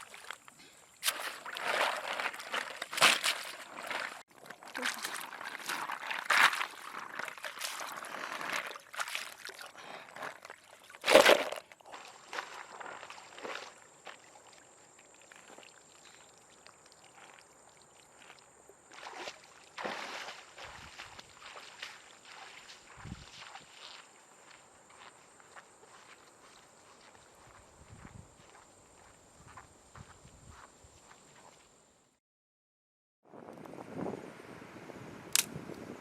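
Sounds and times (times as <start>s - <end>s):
water pouring and sloshing: 0.0s - 24.0s
water splash: 19.0s - 22.6s.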